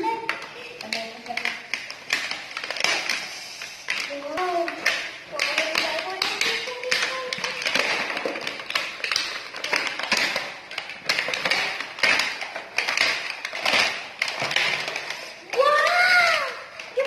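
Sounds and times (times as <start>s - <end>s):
plastic packaging crinkling: 0.0s - 17.0s
small taps and clicks: 0.0s - 17.0s.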